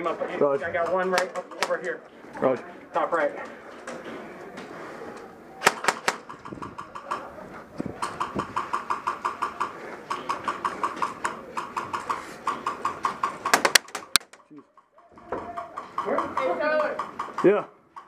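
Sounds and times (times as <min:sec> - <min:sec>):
airsoft guns firing: 0:01.1 - 0:01.9, 0:05.6 - 0:07.2, 0:08.0 - 0:14.4.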